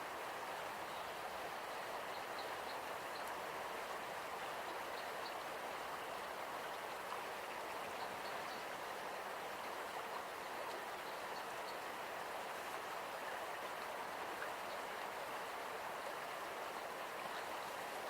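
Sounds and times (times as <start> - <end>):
river flowing: 0.0 - 18.0.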